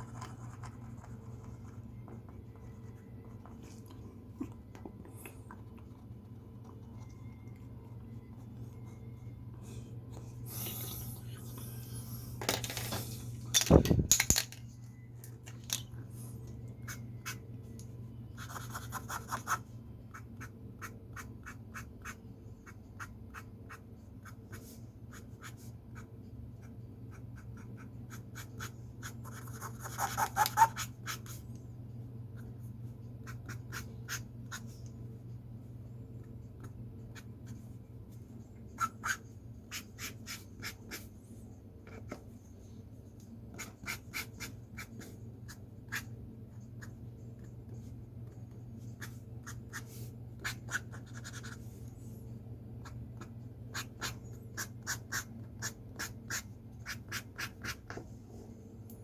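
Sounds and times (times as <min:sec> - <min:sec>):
low room hum: 0:00.0 - 0:59.0
pencil scratching on paper: 0:47.7 - 0:51.8.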